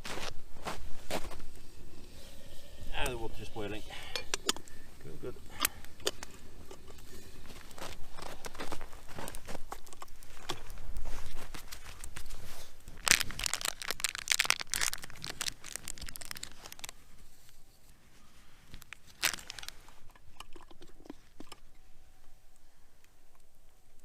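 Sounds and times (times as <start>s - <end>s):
plastic crinkling: 5.9s - 17.0s, 18.6s - 20.0s.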